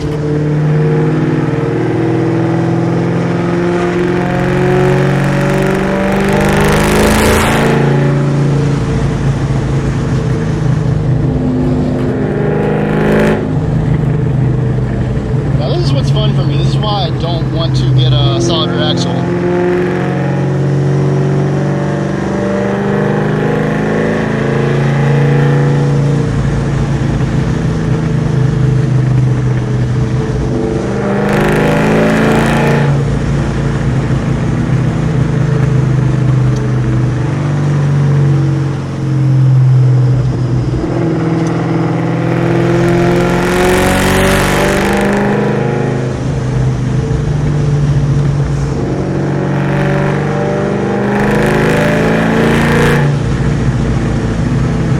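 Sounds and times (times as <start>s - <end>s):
car engine accelerating: 0.0s - 54.9s.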